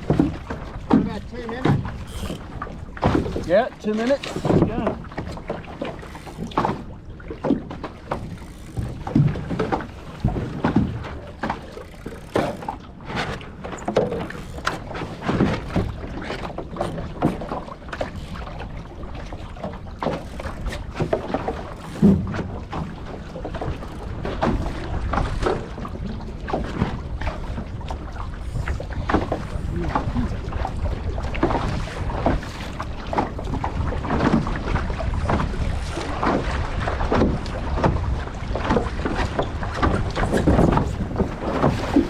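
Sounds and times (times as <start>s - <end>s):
water splashing against boat hull: 0.0s - 42.0s.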